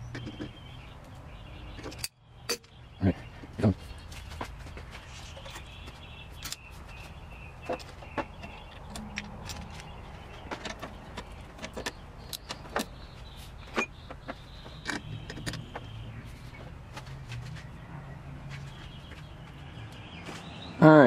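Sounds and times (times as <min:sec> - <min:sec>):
tools clicking and knocking: 0:01.8 - 0:02.7, 0:07.6 - 0:13.0, 0:13.7 - 0:15.9.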